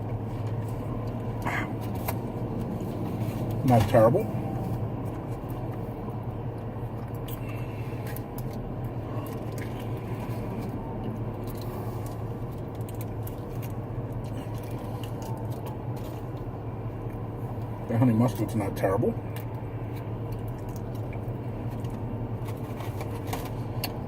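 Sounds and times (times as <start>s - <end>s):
steady low hum: 0.0s - 24.0s
person chewing food: 4.4s - 17.8s, 19.3s - 24.0s
small clicks and rustles: 6.5s - 17.8s, 19.3s - 24.0s.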